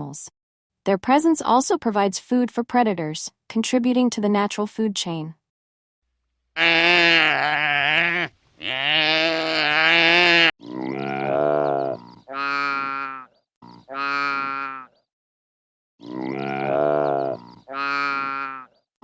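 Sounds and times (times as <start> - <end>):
animal bleating: 6.6 - 14.9, 16.0 - 18.7.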